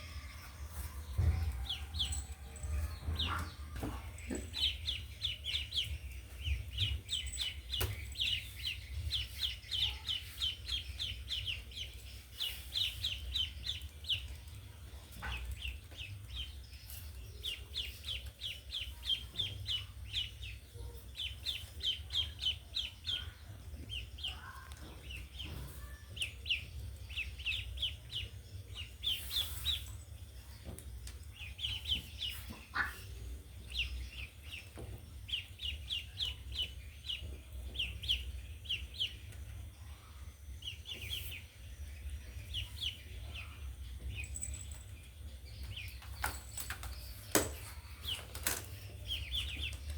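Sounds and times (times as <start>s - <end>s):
ducklings peeping: 0.0s - 49.9s.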